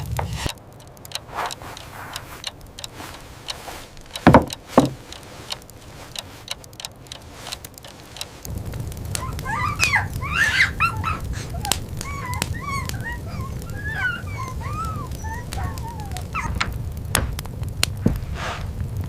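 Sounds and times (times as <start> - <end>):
sharp clicks: 0.0 - 18.2
low rumble: 7.0 - 19.0
dog whimpering: 9.1 - 16.7.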